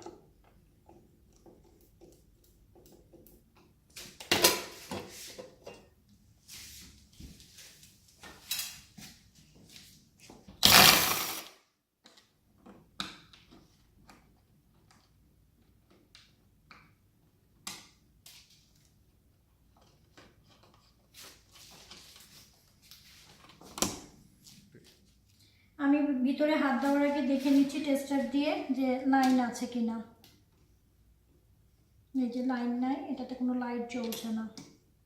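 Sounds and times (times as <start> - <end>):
loud noisy scrape: 10.6 - 11.5.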